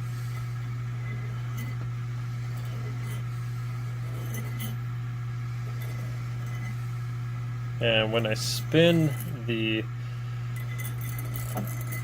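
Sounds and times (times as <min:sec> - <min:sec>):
screw scraping on a file: 0:00.0 - 0:05.0, 0:05.6 - 0:07.0, 0:08.2 - 0:09.5, 0:10.5 - 0:12.0
steady low hum: 0:00.0 - 0:12.0.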